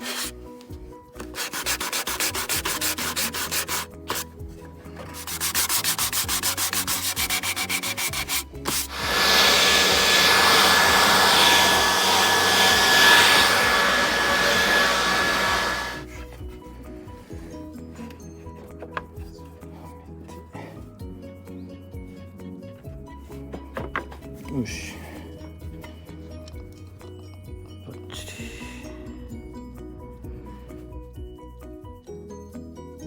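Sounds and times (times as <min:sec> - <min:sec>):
wood sanding: 0:00.0 - 0:00.5, 0:01.2 - 0:17.6.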